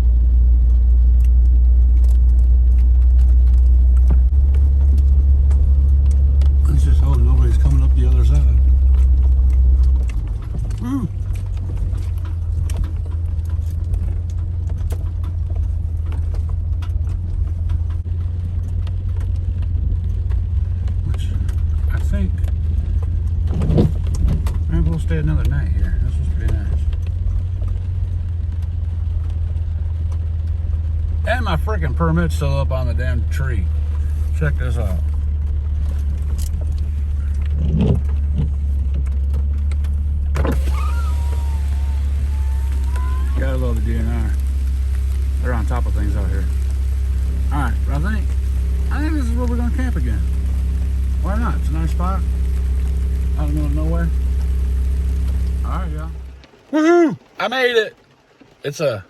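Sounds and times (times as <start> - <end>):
engine and road rumble: 0.0 - 59.0
thin wavering whine: 40.4 - 56.3.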